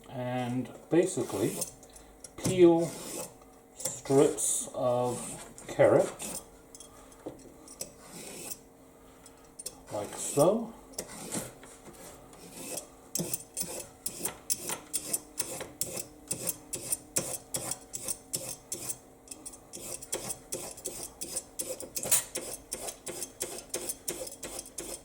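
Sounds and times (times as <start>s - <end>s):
vegetable peeler scraping carrot: 1.2s - 1.8s, 2.7s - 4.1s, 5.0s - 6.4s, 8.0s - 8.6s, 12.4s - 25.0s.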